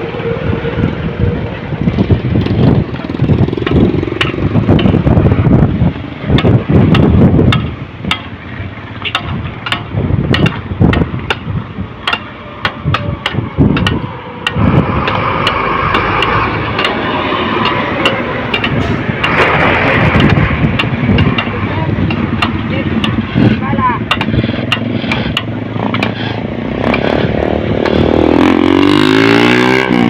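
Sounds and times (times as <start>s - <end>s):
heavy machinery rumble: 0.0s - 30.0s
sharp knocks: 6.3s - 8.4s, 9.0s - 26.2s.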